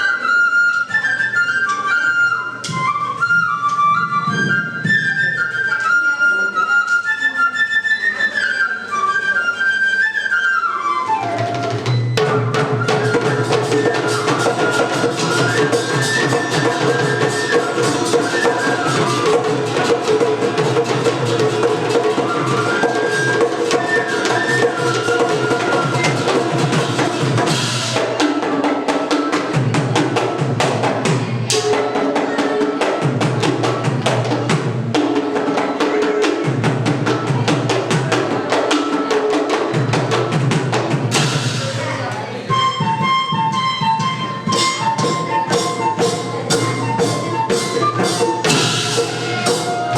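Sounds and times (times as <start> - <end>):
drums and percussion beat: 11.1 - 49.9
orchestra playing: 44.2 - 49.9.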